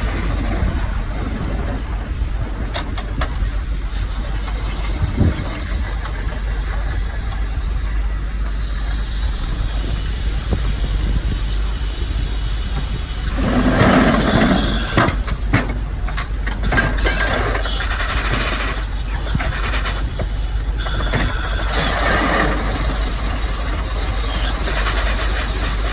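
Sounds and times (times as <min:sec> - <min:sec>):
excavator mechanical rumble: 0:00.0 - 0:25.9.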